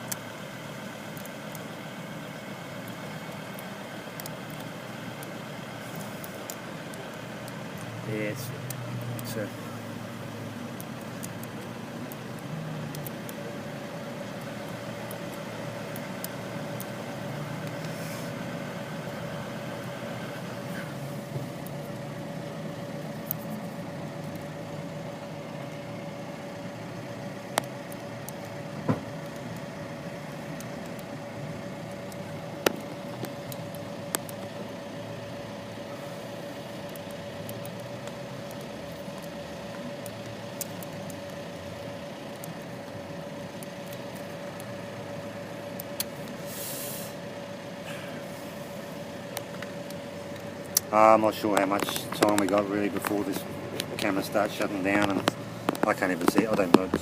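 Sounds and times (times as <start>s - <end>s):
mechanical hum: 0.0s - 57.0s
sharp clicks: 2.8s - 9.4s, 10.7s - 13.4s, 49.3s - 57.0s.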